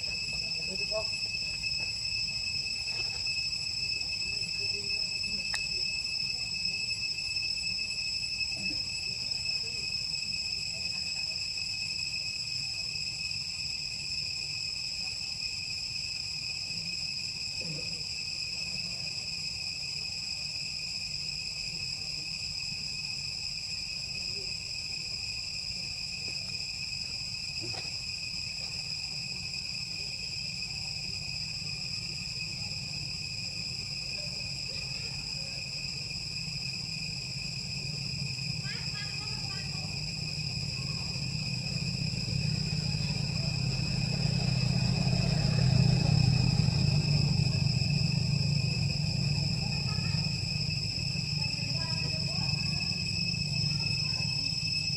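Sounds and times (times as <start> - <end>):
high-pitched insect drone: 0.0 - 54.9
low background rumble: 35.4 - 54.9.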